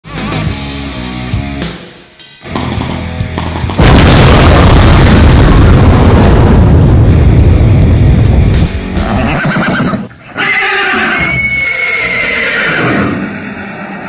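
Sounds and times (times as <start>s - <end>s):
music: 0.0s - 4.3s, 5.0s - 10.2s
deep rumbling boom: 3.8s - 8.7s
horse whinnying: 9.0s - 14.0s.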